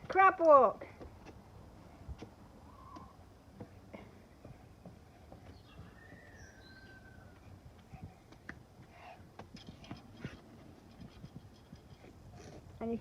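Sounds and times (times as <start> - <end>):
faint taps and rustles: 2.1 - 6.3, 7.3 - 12.8
bird whistled call: 5.7 - 7.3.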